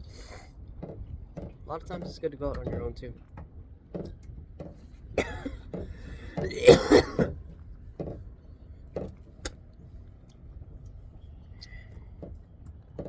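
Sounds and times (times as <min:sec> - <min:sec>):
light knocks: 0:00.8 - 0:06.6, 0:07.2 - 0:08.3
man clearing throat and coughing: 0:05.2 - 0:05.7, 0:06.4 - 0:07.4.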